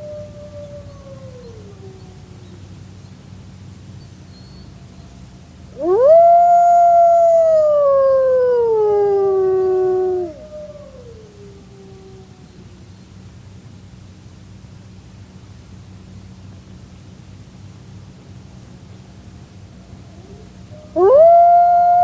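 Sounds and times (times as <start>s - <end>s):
steady low hum: 0.0s - 22.0s
wolf howling: 5.8s - 12.7s, 20.1s - 22.0s.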